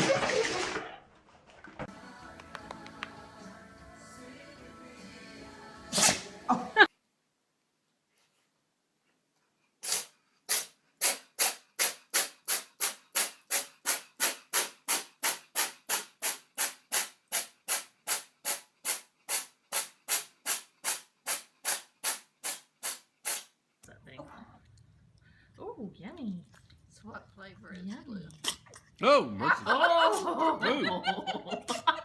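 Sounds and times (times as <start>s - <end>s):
short hissing puffs: 9.8s - 23.6s.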